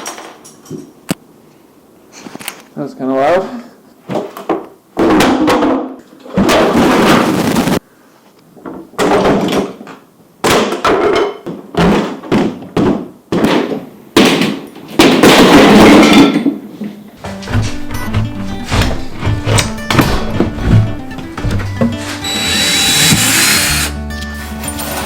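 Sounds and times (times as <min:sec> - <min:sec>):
wooden cabinets thudding and knocking: 0:17.2 - 0:23.4
wood and fasteners scraping: 0:17.2 - 0:24.0.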